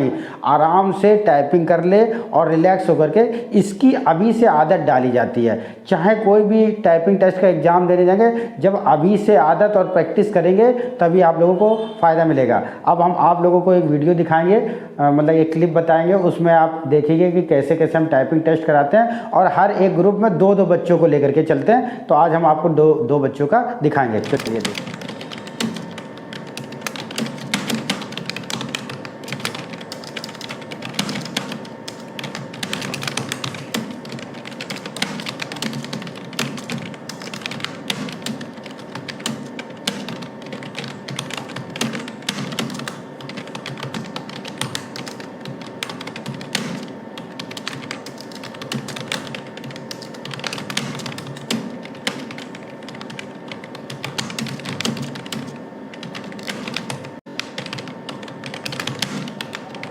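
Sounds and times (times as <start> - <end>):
fast keyboard typing: 24.0 - 59.9.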